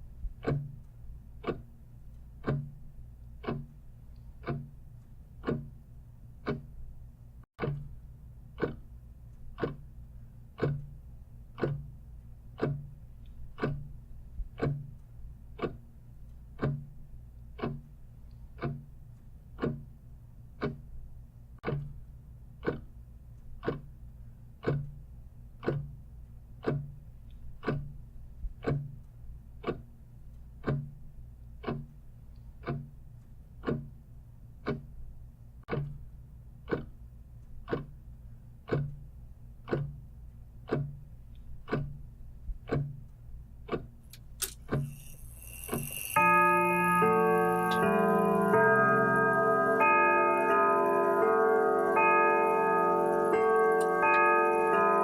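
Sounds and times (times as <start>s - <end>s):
clock ticking: 0.0s - 55.0s
low steady hum: 0.0s - 55.0s
sharp bright clicks: 42.7s - 55.0s.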